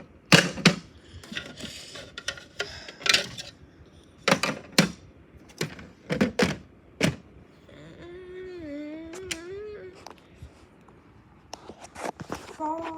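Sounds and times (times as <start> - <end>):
plastic toy clacks and knocks: 0.3 - 3.5, 4.3 - 7.2.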